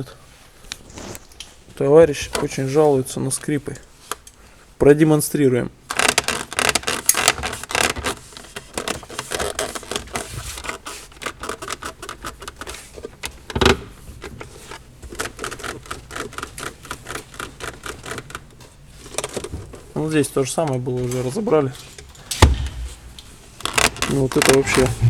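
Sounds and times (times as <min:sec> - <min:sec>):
plastic trim creaking and clicking: 0:05.9 - 0:25.0.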